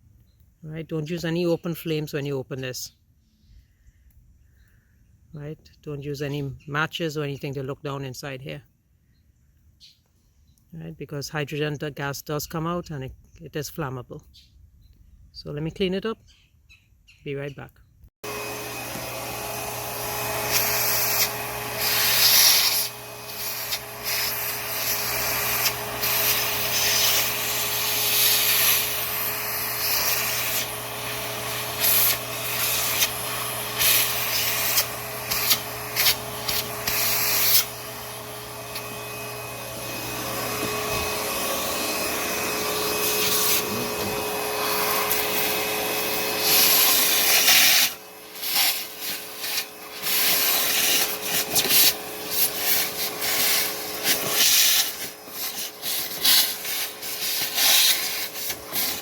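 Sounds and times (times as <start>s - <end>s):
vacuum cleaner suction: 18.2s - 59.0s
vacuum motor hum: 18.2s - 59.0s.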